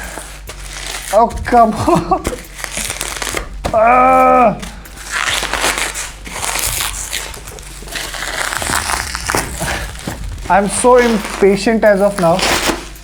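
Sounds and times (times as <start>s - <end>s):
box and wrapping crackling: 0.0s - 13.0s
person groaning in frustration: 3.7s - 4.8s.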